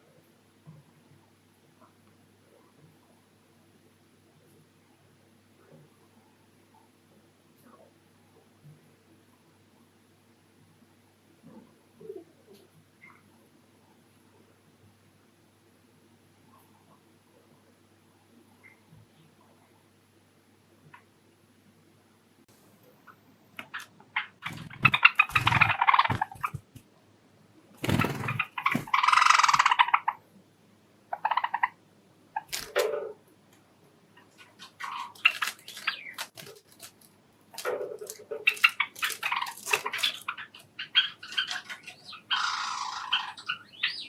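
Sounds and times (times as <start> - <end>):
sparrows chirping: 23.7 - 26.6, 27.9 - 30.2, 38.4 - 44.0.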